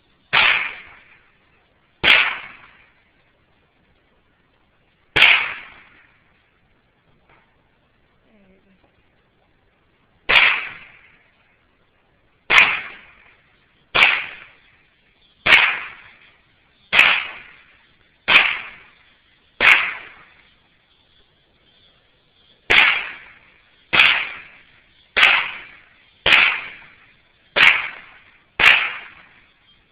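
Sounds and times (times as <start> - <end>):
rifle shots: 0.3 - 1.2, 2.0 - 3.0, 5.2 - 6.2, 10.3 - 11.3, 12.5 - 14.8, 15.4 - 20.5, 22.7 - 29.6.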